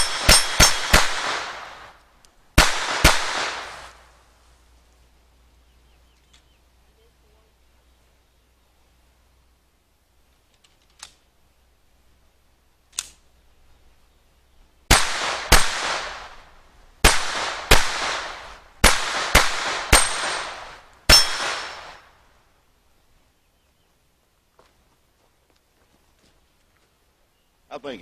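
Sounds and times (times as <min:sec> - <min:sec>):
gunshots echoing: 0:00.0 - 0:02.0, 0:02.6 - 0:04.0, 0:14.9 - 0:22.1
faint clicks: 0:06.1 - 0:06.5.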